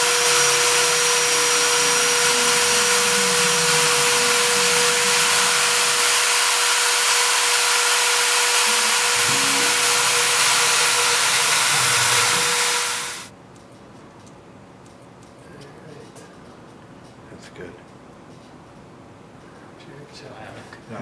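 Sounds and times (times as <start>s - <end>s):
spindle hiss and whine: 0.0s - 13.3s.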